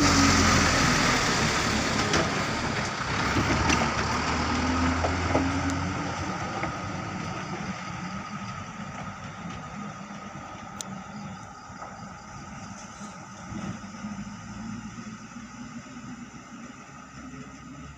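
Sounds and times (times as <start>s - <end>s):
truck engine running: 0.0s - 17.9s.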